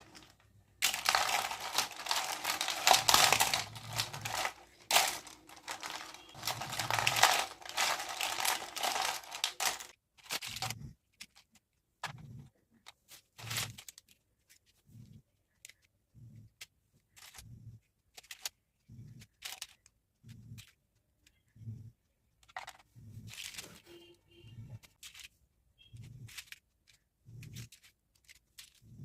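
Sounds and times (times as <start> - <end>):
packaging crinkling: 0.0 - 10.7
plastic toy pieces clattering: 0.0 - 11.5, 18.1 - 18.5, 19.4 - 19.9, 22.4 - 23.8.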